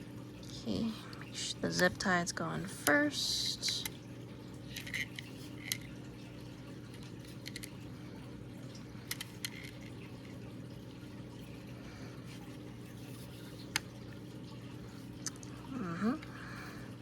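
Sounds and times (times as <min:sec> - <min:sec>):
low background hum: 0:00.0 - 0:17.0
plastic parts clicking and tapping: 0:07.3 - 0:07.7, 0:09.1 - 0:09.9.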